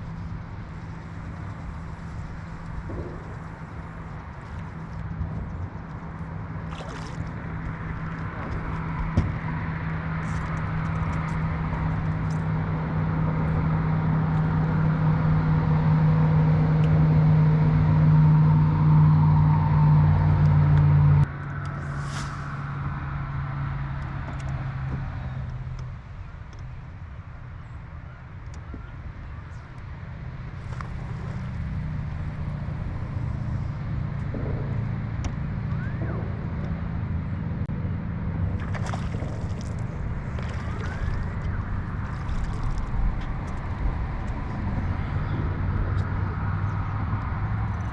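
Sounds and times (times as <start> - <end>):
outboard motor running: 0.0 - 19.1, 23.8 - 47.9
rushing wind: 0.0 - 24.2, 30.1 - 47.9
water noise: 0.0 - 47.9.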